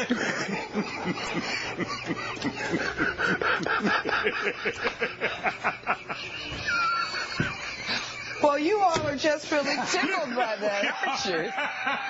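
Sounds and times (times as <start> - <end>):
people laughing: 0.0 - 12.0.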